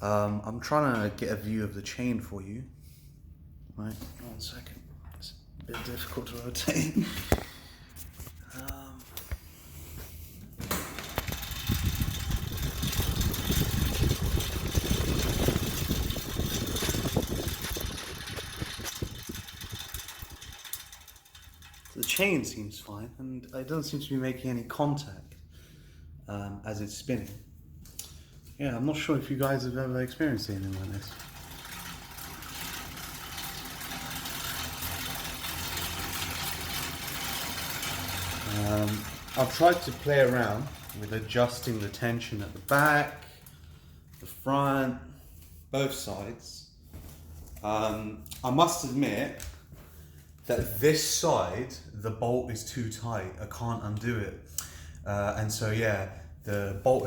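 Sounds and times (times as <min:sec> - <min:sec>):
exercise bike fan whooshing: 0:09.3 - 0:23.0, 0:28.2 - 0:44.4
fast dense rattle: 0:10.6 - 0:22.6, 0:29.5 - 0:43.2.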